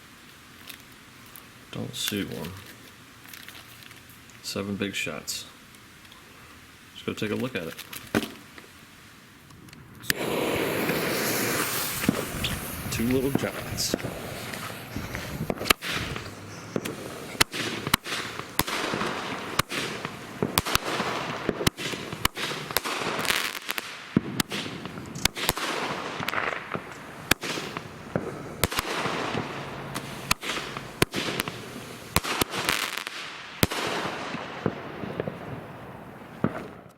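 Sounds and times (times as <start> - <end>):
rushing crackling noise: 6.9 - 36.9
firework bangs: 7.1 - 8.7, 10.0 - 36.9.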